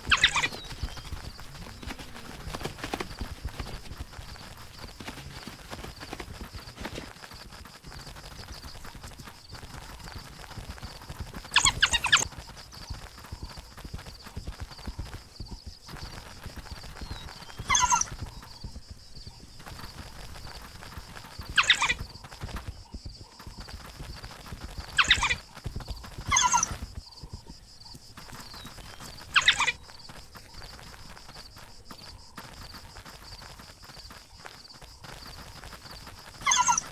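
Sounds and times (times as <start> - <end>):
high-pitched animal calls: 0.0 - 5.8, 10.9 - 12.5, 17.0 - 18.5, 21.2 - 22.5, 24.8 - 25.5, 26.1 - 26.9, 28.4 - 29.9, 35.6 - 36.9.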